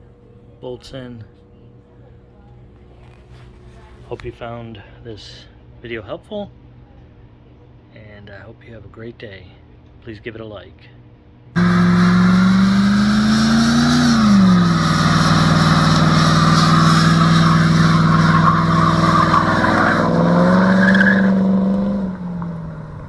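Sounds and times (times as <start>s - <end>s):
loud engine running: 11.6s - 23.0s.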